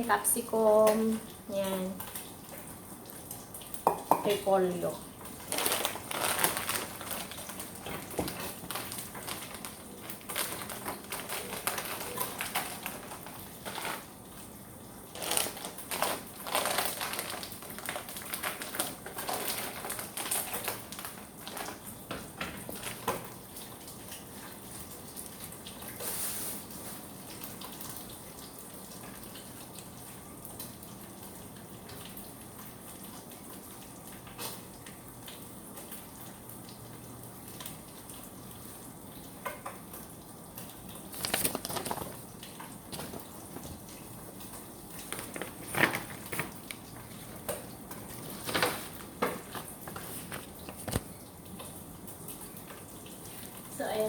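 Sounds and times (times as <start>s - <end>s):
faint hiss with low hum: 0.0s - 54.0s
clicks and knocks of kitchen work: 0.7s - 4.5s, 5.2s - 14.5s, 15.2s - 26.1s, 39.2s - 53.6s.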